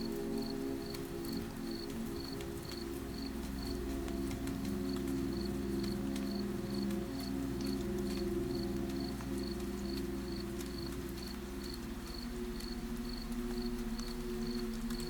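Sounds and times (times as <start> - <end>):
cricket chirping: 4.9 - 6.9, 7.6 - 15.0.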